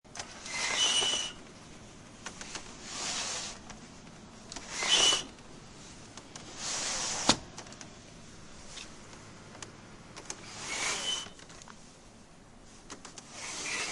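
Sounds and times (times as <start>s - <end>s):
window sliding in its frame: 0.2s - 1.4s, 2.4s - 3.7s, 4.6s - 5.4s, 6.4s - 7.5s, 10.3s - 11.5s, 13.1s - 13.9s
high squeal: 0.5s - 1.4s, 10.6s - 11.4s.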